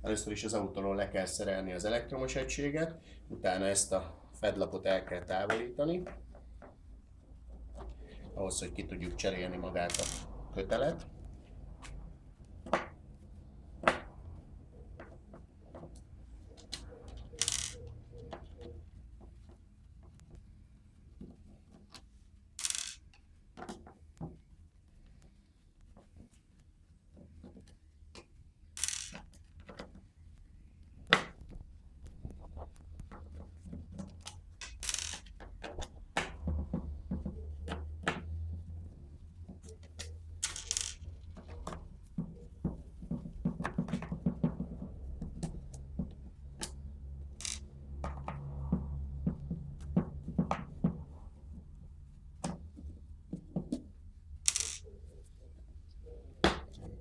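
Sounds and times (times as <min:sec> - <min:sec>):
tools tapping plastic housing: 0:13.8 - 0:19.4, 0:31.0 - 0:51.7.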